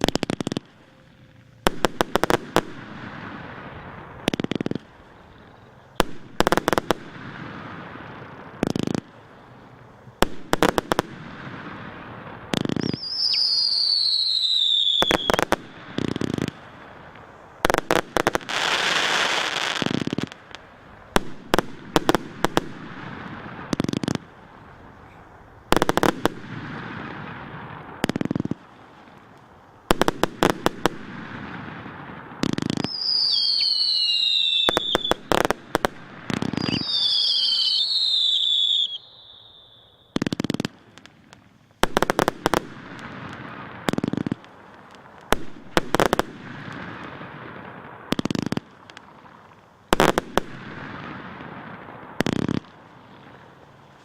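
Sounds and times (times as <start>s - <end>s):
crackling sparks: 0.0s - 54.0s
fireworks launch and burst bangs: 1.5s - 54.0s
falling firework whistle: 12.6s - 16.6s, 32.6s - 40.2s.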